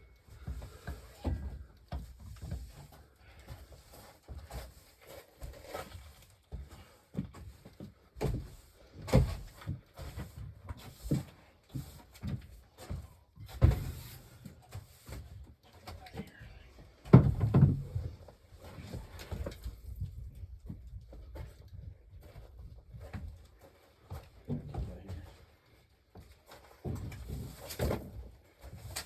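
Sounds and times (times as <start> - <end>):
knocks and thumps: 17.0 - 18.3.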